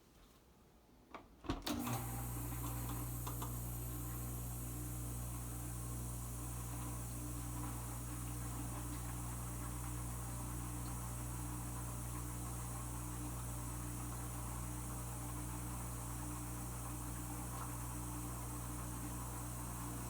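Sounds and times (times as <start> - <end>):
dishwasher pump motor humming: 1.6 - 20.0.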